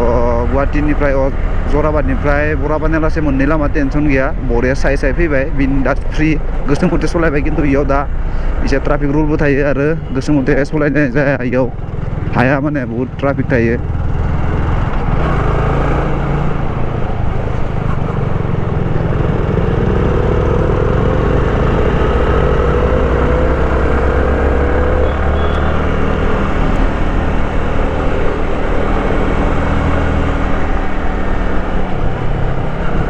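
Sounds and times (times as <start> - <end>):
motorcycle engine droning: 0.0 - 33.0.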